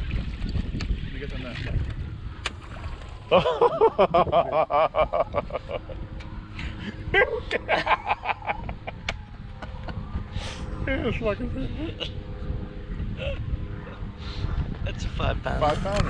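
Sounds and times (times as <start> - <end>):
man laughing hard: 3.3 - 10.1, 13.1 - 13.6.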